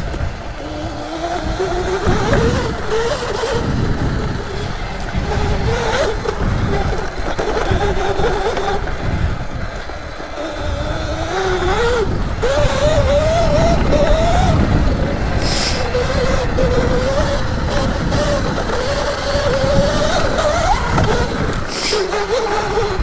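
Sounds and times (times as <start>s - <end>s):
electric motor whining: 0.0s - 23.0s.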